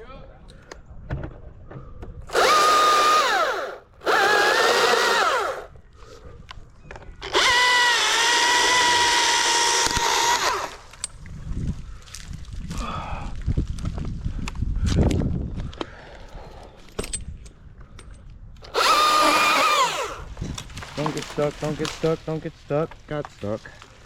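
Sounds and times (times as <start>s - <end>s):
chainsaw at full throttle: 2.3s - 5.7s, 7.3s - 10.8s, 18.7s - 20.3s.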